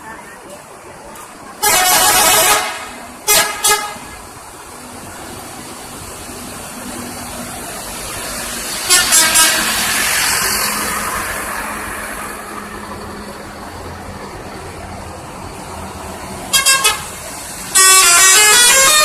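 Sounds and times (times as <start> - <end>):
engine hum: 0.0 - 19.0
musical air horn toots: 1.6 - 4.1, 8.9 - 10.0, 16.5 - 17.1, 17.7 - 19.0.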